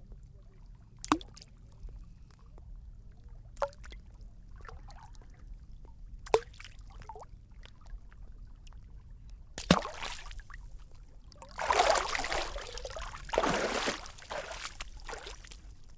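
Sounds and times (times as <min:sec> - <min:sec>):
water drips and laps: 0:01.0 - 0:08.7, 0:09.6 - 0:15.9
water splashing from swim strokes: 0:09.6 - 0:10.5, 0:11.5 - 0:15.8.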